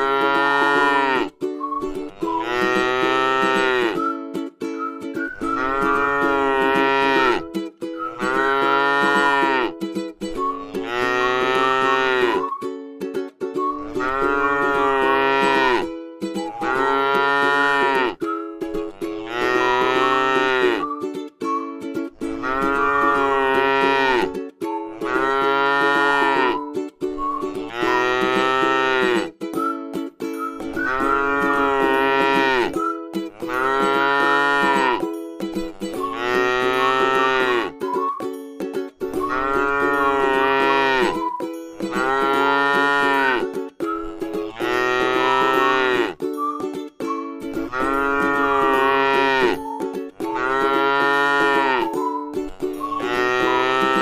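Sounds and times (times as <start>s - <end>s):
cow mooing: 0.0s - 1.3s, 2.2s - 4.0s, 5.5s - 7.4s, 8.2s - 9.7s, 10.6s - 12.4s, 13.8s - 15.8s, 16.5s - 18.2s, 19.1s - 20.9s, 22.4s - 24.3s, 25.0s - 26.6s, 27.7s - 29.3s, 30.9s - 32.7s, 33.4s - 35.0s, 36.1s - 37.8s, 39.2s - 41.2s, 41.9s - 43.4s, 44.6s - 46.2s, 47.7s - 49.6s, 50.3s - 51.9s, 53.0s - 54.0s
music: 0.0s - 54.0s.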